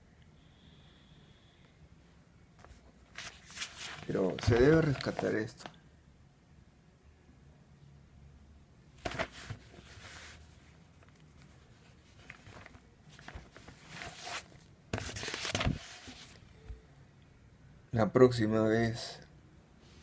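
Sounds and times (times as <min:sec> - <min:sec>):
rustling and handling noises: 0:02.6 - 0:05.8, 0:09.0 - 0:16.8.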